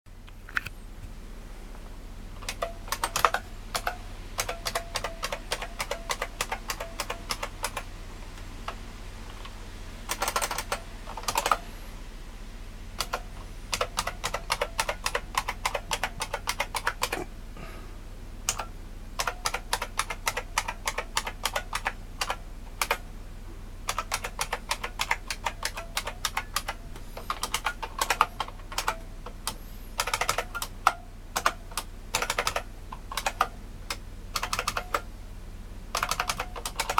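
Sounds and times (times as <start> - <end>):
low steady hum: 0.1 - 36.9
keyboard keys clicking: 2.4 - 7.9, 10.1 - 11.6, 13.0 - 17.2, 18.5 - 23.0, 23.9 - 33.5, 34.4 - 35.0, 36.0 - 36.9.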